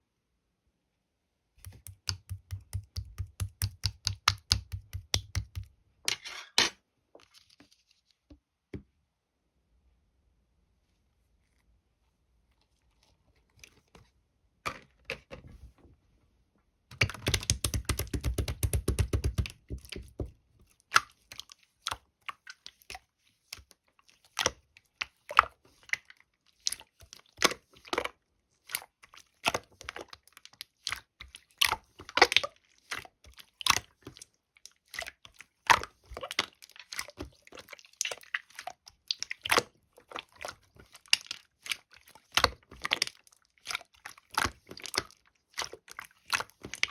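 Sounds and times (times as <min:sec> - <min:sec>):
slime clicking and popping: 0:01.6 - 0:05.7, 0:16.9 - 0:20.1.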